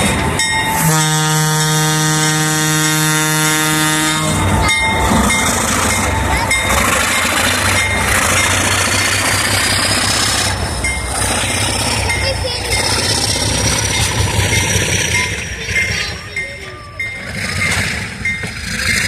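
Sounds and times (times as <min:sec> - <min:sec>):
diesel engines running: 0:00.0 - 0:19.0
rail and wheel noise: 0:00.0 - 0:19.0
locomotive horn: 0:00.8 - 0:05.7.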